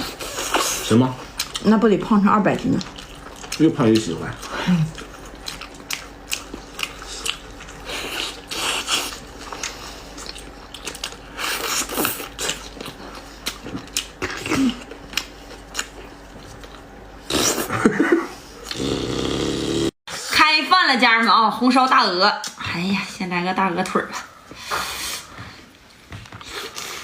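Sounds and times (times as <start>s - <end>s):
wet chewing and smacking: 0.0s - 17.0s.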